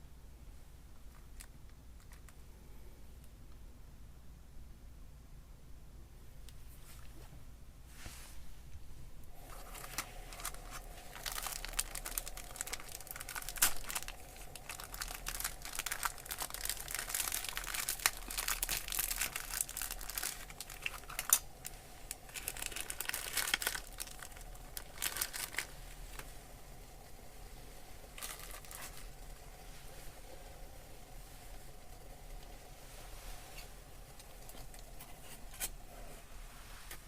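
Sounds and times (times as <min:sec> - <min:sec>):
plastic bag crinkling: 0:09.3 - 0:26.3, 0:28.0 - 0:30.4.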